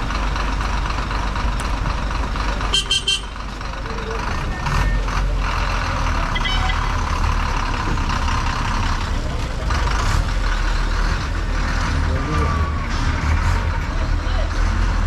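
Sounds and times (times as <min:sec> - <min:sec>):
bus diesel engine rumbling: 0:00.0 - 0:15.0.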